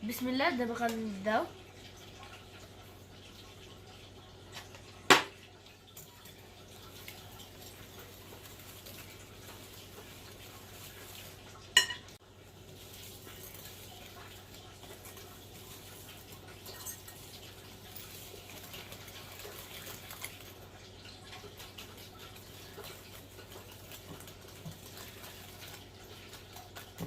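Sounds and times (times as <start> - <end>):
bowl or utensil clinking: 11.8 - 12.2, 16.6 - 17.4.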